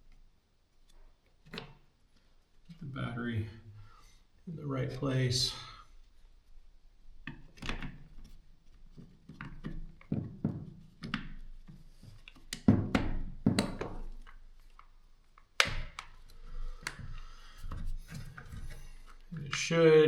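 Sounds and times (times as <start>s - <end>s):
drill parts knocking and clicking: 9.3s - 15.0s.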